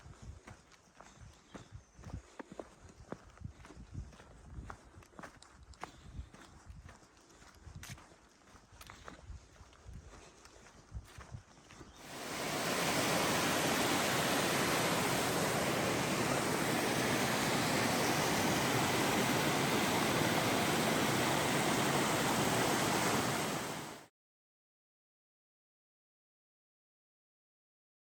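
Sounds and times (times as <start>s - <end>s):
running water rushing: 12.0s - 24.1s.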